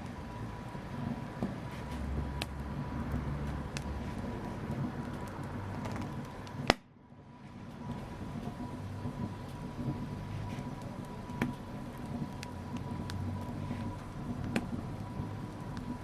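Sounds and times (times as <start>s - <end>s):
fire popping: 0.0s - 16.0s
wood fire crackling: 0.0s - 16.0s.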